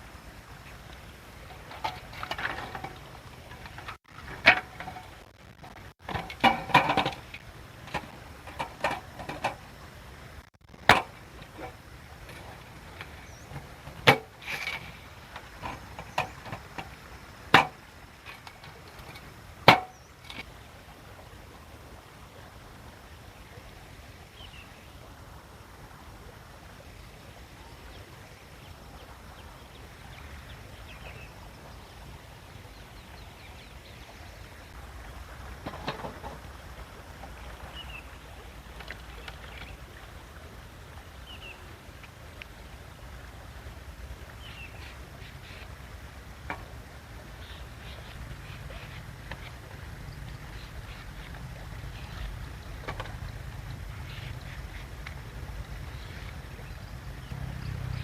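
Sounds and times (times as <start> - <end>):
sharp knocks: 17.5 - 17.8, 19.6 - 20.0.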